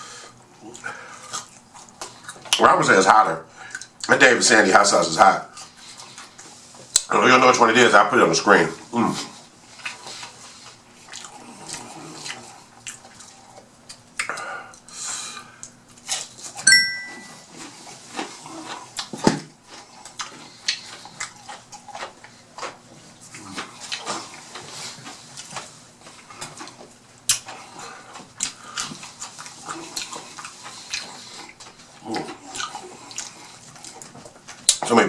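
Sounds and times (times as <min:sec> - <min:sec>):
chewing and wet mouth smacks: 0:09.7 - 0:14.9, 0:17.6 - 0:34.9.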